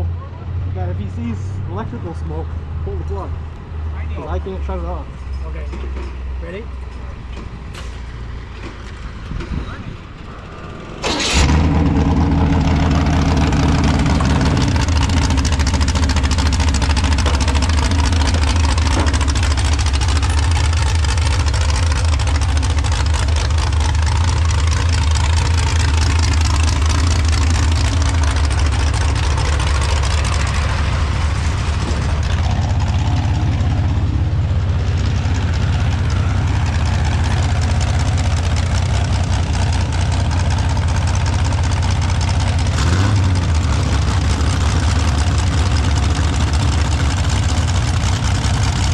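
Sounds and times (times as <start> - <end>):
tractor engine running loud: 9.8 - 48.9.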